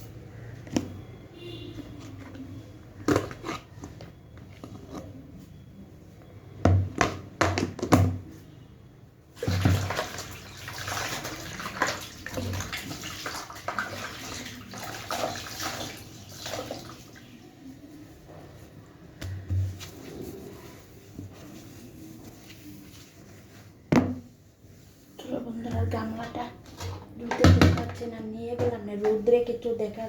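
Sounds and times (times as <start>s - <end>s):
objects knocking and clattering: 6.6s - 8.3s, 26.7s - 29.2s
running water splashing: 9.4s - 17.4s.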